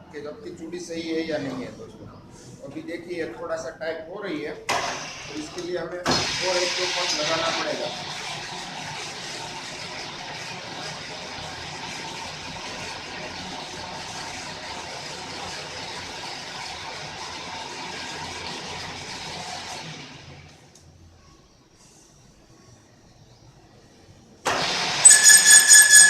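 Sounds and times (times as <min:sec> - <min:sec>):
lathe running: 0:25.0 - 0:26.0.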